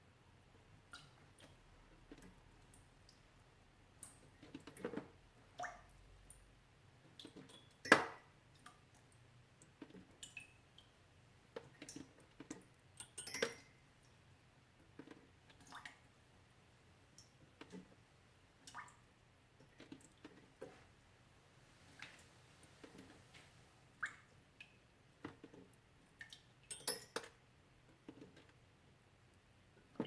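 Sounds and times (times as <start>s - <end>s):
water drops dripping: 7.1s - 11.0s, 18.6s - 19.0s.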